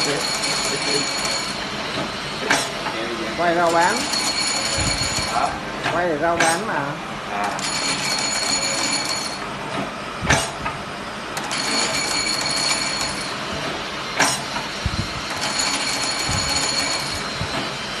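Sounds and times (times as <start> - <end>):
machine whining: 0.0 - 5.8, 7.5 - 18.0
cutting machine clacking: 11.4 - 17.8.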